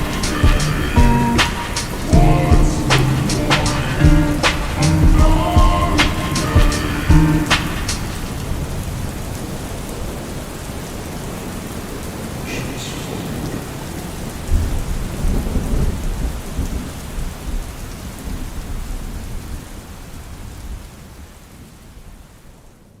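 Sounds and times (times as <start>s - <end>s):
steady rain: 0.0s - 23.0s
low rumble of thunder: 14.4s - 19.6s.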